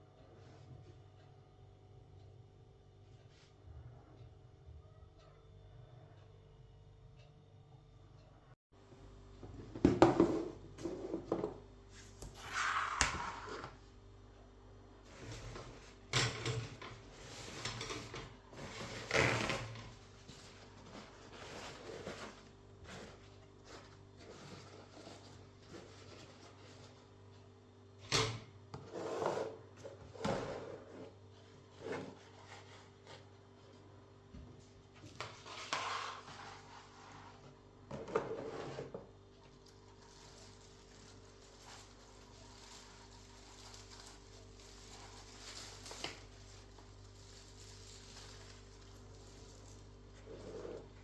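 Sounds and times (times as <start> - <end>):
scraping and rustling: 15.1 - 27.2, 35.0 - 51.0.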